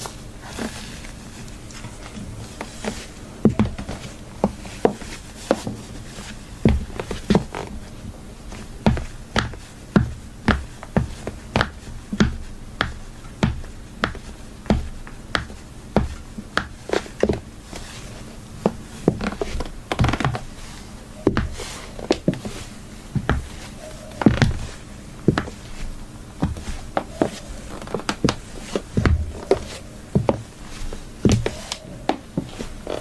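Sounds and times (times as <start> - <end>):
high heels clicking on hard floor: 1.9 - 5.8, 6.6 - 7.8, 8.5 - 17.5, 21.2 - 22.6, 23.2 - 33.0.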